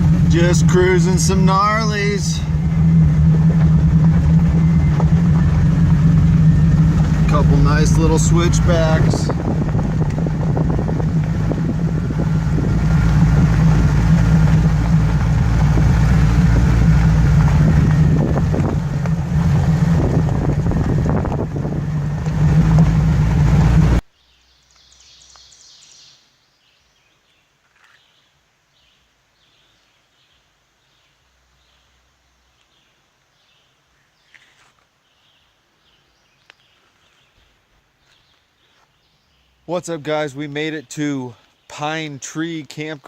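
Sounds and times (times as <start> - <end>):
car engine drone: 0.0 - 24.1
road and wind noise: 0.0 - 24.1.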